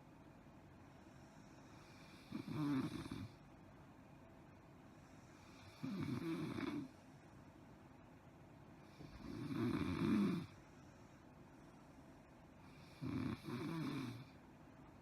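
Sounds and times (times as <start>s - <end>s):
woman snoring: 1.6s - 3.4s, 5.4s - 7.0s, 8.9s - 10.6s, 12.6s - 14.4s.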